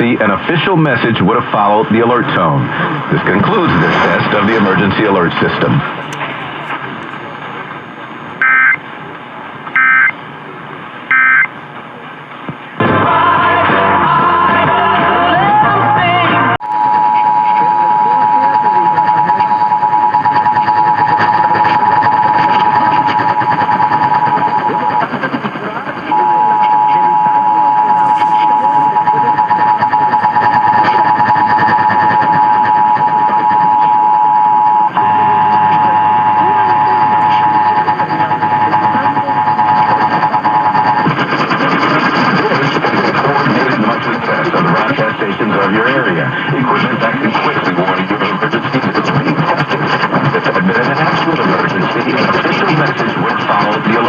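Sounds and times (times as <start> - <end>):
radio hiss: 0.0 - 15.6, 16.6 - 54.0
warbling two-tone data signal: 6.0 - 8.9, 9.8 - 10.2, 11.1 - 11.6, 16.6 - 46.0
two-tone alert alarm: 8.4 - 8.8, 9.8 - 10.2, 11.1 - 11.6, 26.1 - 41.3
music with singing: 12.8 - 16.6.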